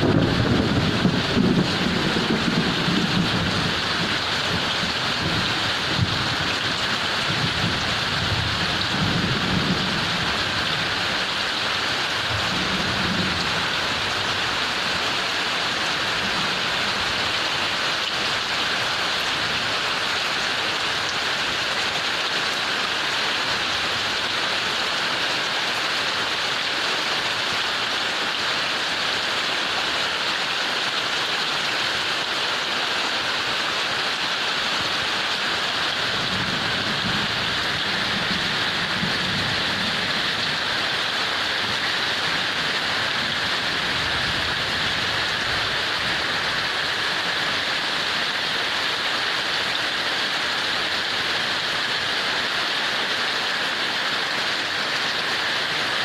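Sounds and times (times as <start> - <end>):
thunder rumbling: 0.0 - 11.2, 12.2 - 14.6, 36.0 - 46.6
heavy rain pouring: 0.0 - 56.0.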